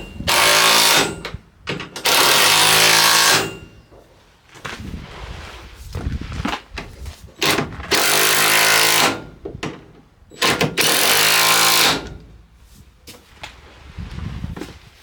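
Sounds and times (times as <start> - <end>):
impact wrench hammering: 0.0 - 3.9, 7.4 - 12.3.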